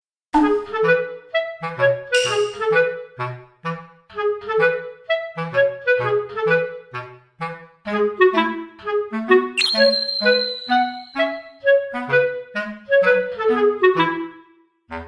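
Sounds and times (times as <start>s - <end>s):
bouncy woodwind melody: 4.4s - 7.0s, 9.6s - 11.3s.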